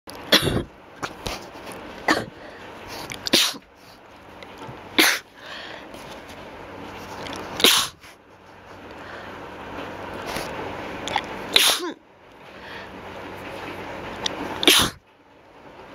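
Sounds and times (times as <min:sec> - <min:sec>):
person sneezing: 0:00.3 - 0:01.2, 0:02.1 - 0:02.4, 0:03.2 - 0:03.6, 0:05.0 - 0:05.3, 0:07.6 - 0:08.0, 0:11.5 - 0:12.0, 0:14.6 - 0:15.0
quiet breaths: 0:05.3 - 0:06.2, 0:08.7 - 0:09.6, 0:12.4 - 0:13.1.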